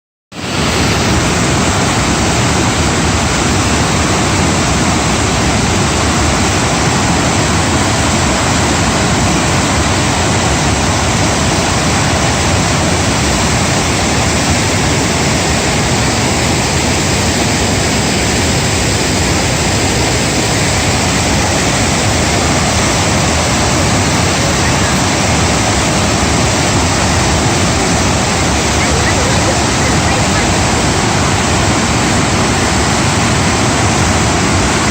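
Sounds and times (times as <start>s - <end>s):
fast-flowing floodwater rushing: 0.3s - 34.9s.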